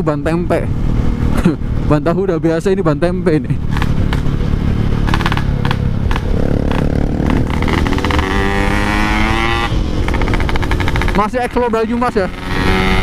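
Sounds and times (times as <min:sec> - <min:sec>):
two-stroke motorcycle engine revving: 0:03.6 - 0:13.0.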